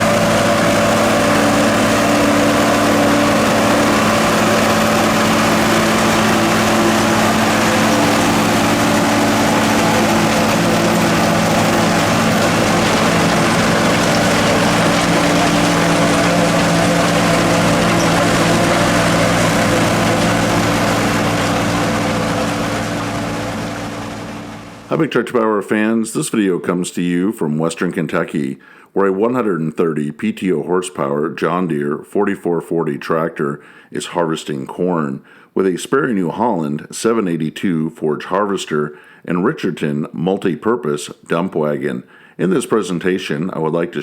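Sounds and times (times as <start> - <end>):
forage harvester chopping rush: 0.0 - 24.9
tractor diesel engine: 0.0 - 25.2.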